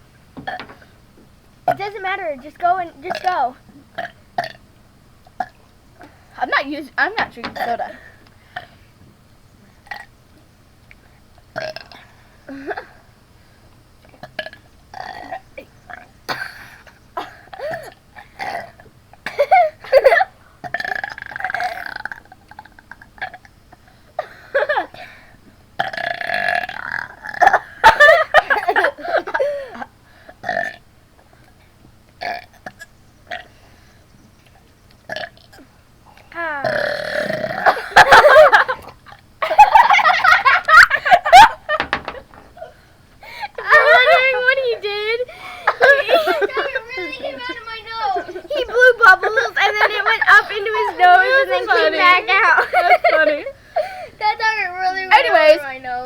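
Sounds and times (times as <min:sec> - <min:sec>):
people burping: 0:00.4 - 0:00.9, 0:03.1 - 0:04.6, 0:05.3 - 0:06.2, 0:07.2 - 0:08.8, 0:09.8 - 0:10.1, 0:11.6 - 0:13.0, 0:14.2 - 0:25.2, 0:25.8 - 0:30.8, 0:32.2 - 0:33.6, 0:35.1 - 0:44.4, 0:45.3 - 0:54.1.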